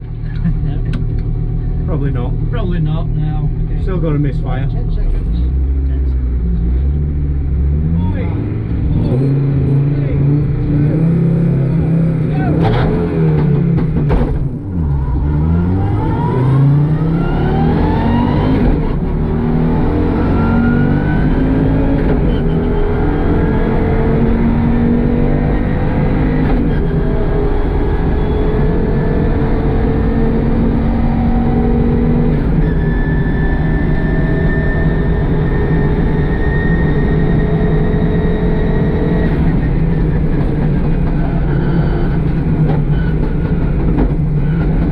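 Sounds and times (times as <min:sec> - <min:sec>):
car engine accelerating: 0:00.0 - 0:44.9.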